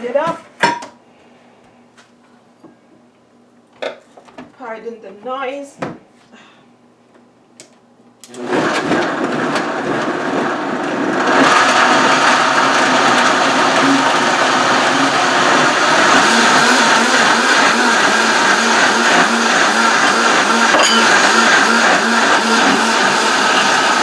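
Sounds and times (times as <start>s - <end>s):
blender running: 8.3s - 24.0s.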